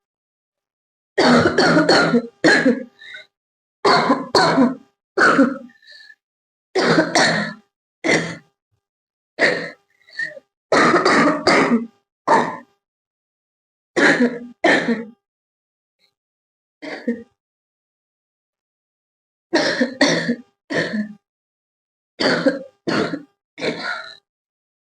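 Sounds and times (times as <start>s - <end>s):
girl coughing: 1.2s - 2.9s, 3.9s - 5.7s, 6.8s - 8.4s, 10.8s - 12.6s, 14.0s - 15.1s, 19.6s - 21.2s, 22.2s - 24.2s.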